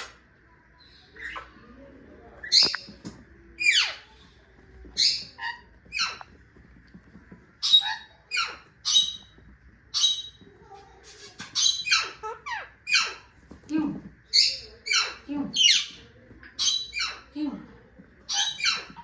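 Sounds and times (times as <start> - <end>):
parrot squawking: 7.6 - 9.3, 11.4 - 13.3, 18.3 - 19.0.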